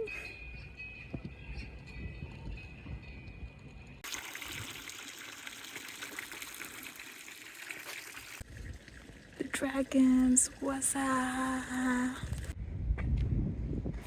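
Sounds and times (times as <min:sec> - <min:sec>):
running water rushing: 0:04.0 - 0:11.3.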